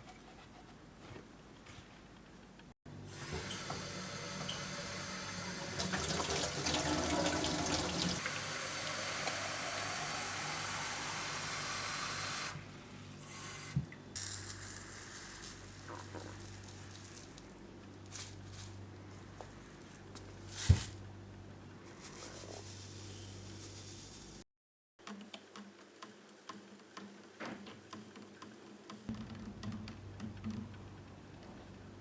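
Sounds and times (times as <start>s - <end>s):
tap water running into sink: 3.2s - 10.1s.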